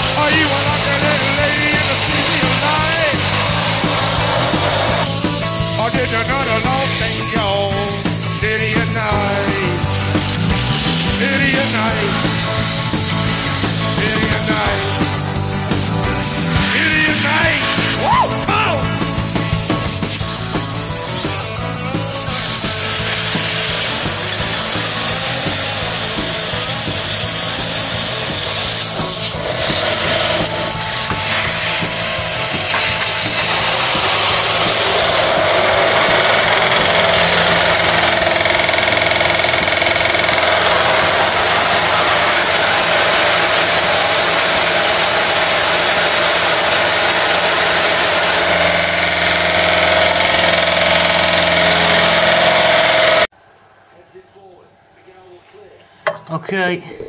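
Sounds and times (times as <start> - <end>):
vacuum cleaner whine: 10.1 - 53.3.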